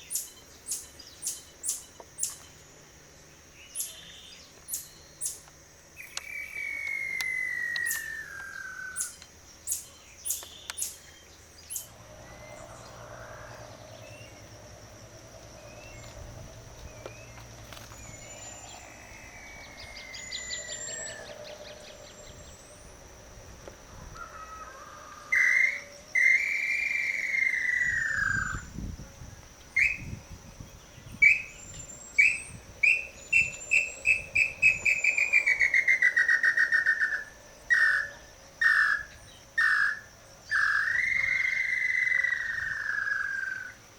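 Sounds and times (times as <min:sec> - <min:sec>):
insect buzz: 0:00.0 - 0:43.9
faint bird chirps: 0:03.5 - 0:14.5
bird whistling calls: 0:06.0 - 0:11.0, 0:25.4 - 0:28.7, 0:29.7 - 0:30.1, 0:31.2 - 0:43.8.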